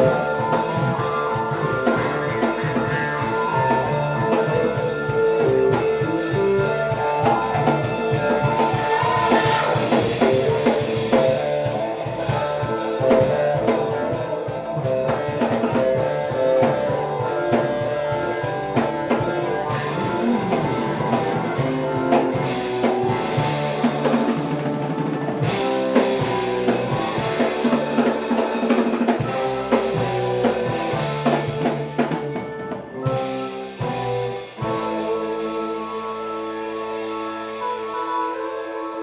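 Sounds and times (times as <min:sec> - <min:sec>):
drum kit beat: 0:00.0 - 0:36.2
guitar: 0:00.0 - 0:39.0
live band playing: 0:00.0 - 0:39.0.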